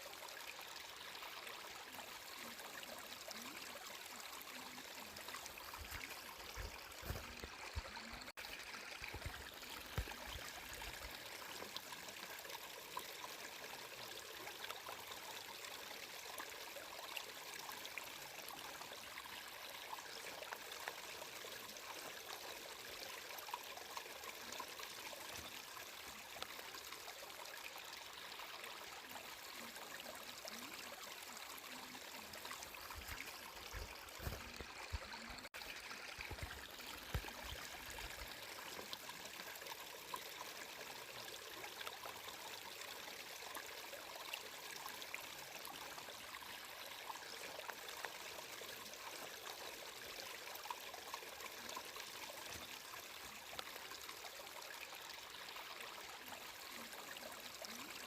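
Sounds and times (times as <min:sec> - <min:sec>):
water flowing and trickling: 0:00.0 - 0:58.0.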